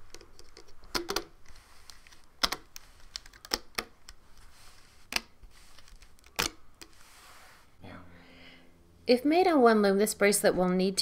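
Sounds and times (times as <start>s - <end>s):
plastic clicks and taps: 0.0s - 1.3s, 1.9s - 4.2s.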